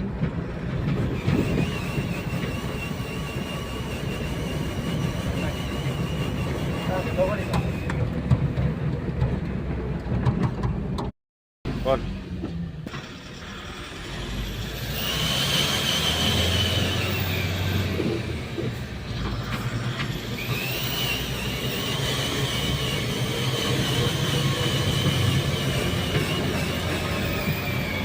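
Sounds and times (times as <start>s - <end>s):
truck diesel engine revving: 0.0s - 11.0s, 11.7s - 28.0s
turbo whistle: 1.2s - 8.0s.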